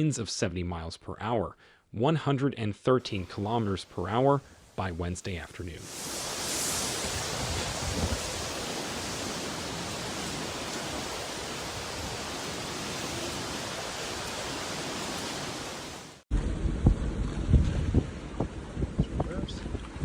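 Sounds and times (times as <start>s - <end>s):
hurricane wind and water rushing: 3.0s - 20.0s
wind buffeting microphone: 5.8s - 15.1s, 16.4s - 20.0s.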